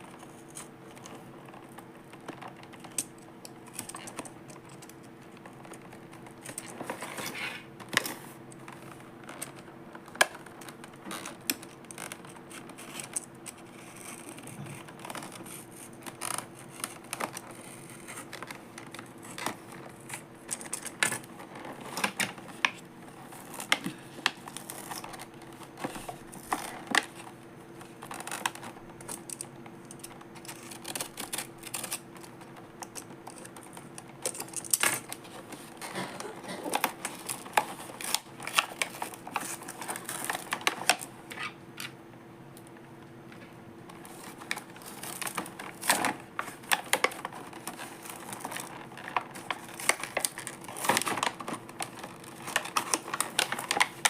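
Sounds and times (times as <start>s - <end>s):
faint steady hum: 0.0s - 54.0s.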